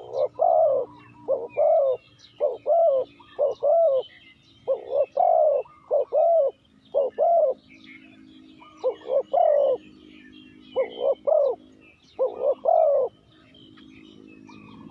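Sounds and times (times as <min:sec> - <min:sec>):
dove cooing: 0:00.0 - 0:07.6, 0:08.6 - 0:09.9, 0:10.7 - 0:11.6, 0:12.2 - 0:13.2
small birds chirping: 0:00.0 - 0:14.9.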